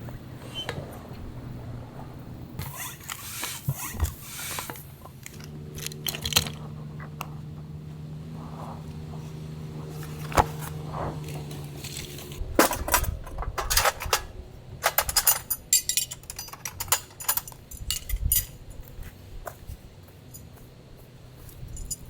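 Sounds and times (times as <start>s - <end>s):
low steady hum: 0.0s - 22.0s
metallic objects clinking: 5.2s - 6.6s, 12.6s - 18.8s, 21.7s - 22.0s.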